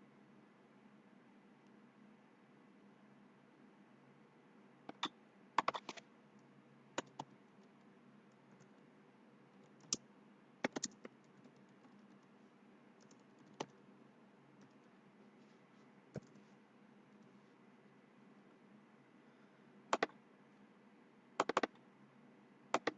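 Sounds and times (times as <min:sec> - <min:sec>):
low steady hiss: 0:00.0 - 0:22.9
computer keyboard clicks: 0:04.9 - 0:06.0, 0:07.0 - 0:07.7, 0:09.6 - 0:10.0, 0:10.6 - 0:12.3, 0:13.0 - 0:13.8, 0:19.9 - 0:20.1, 0:21.4 - 0:21.8.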